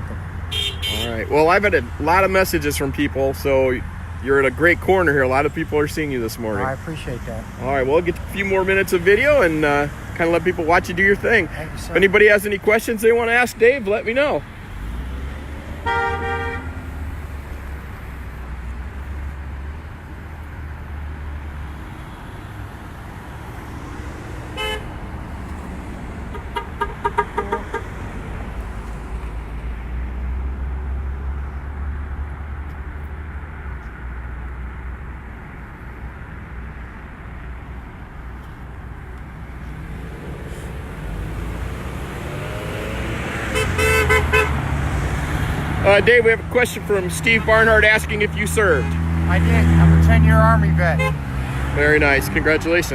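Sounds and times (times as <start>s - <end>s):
road traffic: 0.0s - 52.9s
car horns honking: 0.4s - 1.5s, 15.8s - 17.0s, 24.5s - 25.0s, 26.2s - 28.0s, 42.4s - 44.8s, 45.9s - 52.0s.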